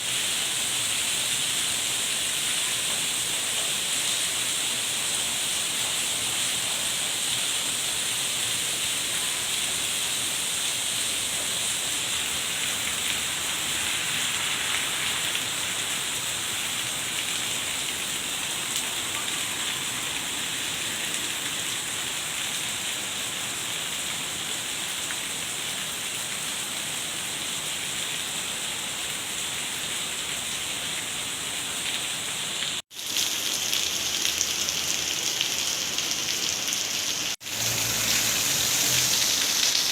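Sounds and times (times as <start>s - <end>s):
heavy rain hissing: 0.0s - 23.6s, 32.7s - 39.9s.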